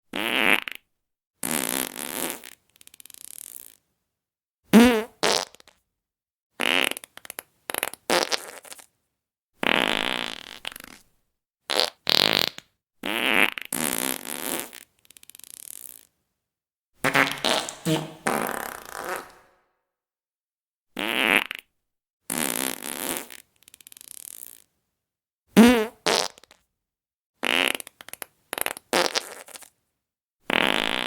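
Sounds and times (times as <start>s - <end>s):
fart sound effects: 4.8s - 5.6s, 17.0s - 19.6s.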